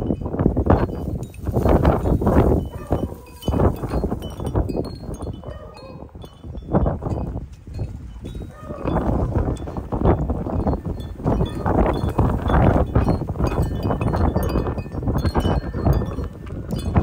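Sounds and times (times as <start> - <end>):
wind buffeting microphone: 0.0 - 17.0.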